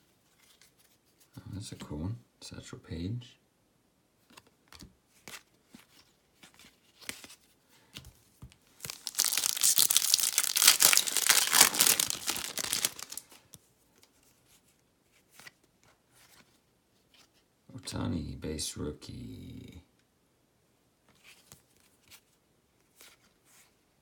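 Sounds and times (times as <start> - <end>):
card pack wrapper tearing: 8.8 - 13.3
trading cards being handled: 8.8 - 13.4.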